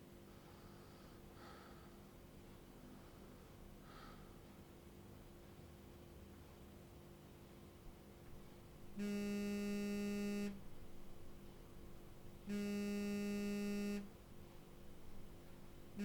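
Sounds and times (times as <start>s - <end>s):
faint steady hum: 0.0s - 16.0s
buzzy electronic tone: 9.0s - 10.6s, 12.5s - 14.1s.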